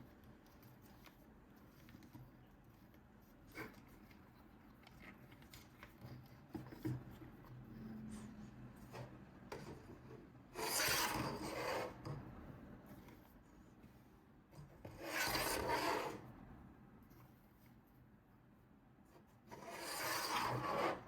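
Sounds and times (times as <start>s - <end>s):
loud scraping rub: 19.6s - 21.0s.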